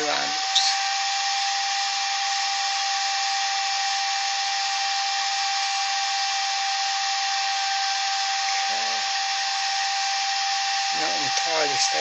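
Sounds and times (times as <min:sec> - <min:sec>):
cooling fan whirring: 0:00.0 - 0:12.0.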